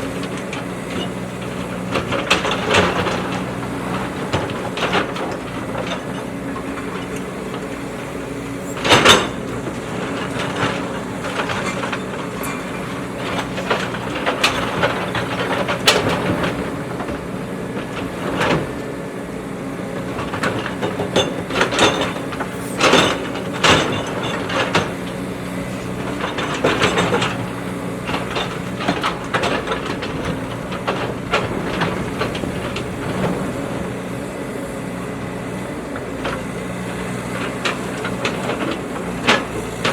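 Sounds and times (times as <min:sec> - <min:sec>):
diesel engine running: 0:00.0 - 0:39.9
digger clanks and knocks: 0:00.0 - 0:39.9.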